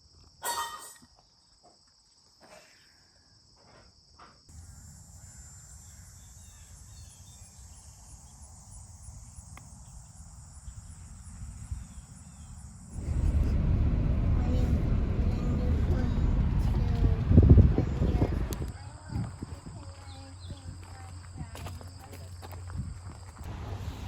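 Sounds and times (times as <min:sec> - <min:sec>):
insects chirring: 0:00.0 - 0:13.9
low rumble: 0:10.7 - 0:19.4, 0:23.5 - 0:24.0.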